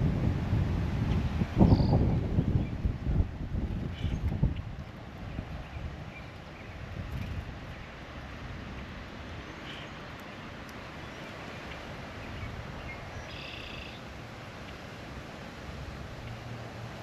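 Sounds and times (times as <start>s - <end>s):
outdoor background noise: 0.0s - 17.0s
bird calls: 9.4s - 10.4s, 11.0s - 14.0s.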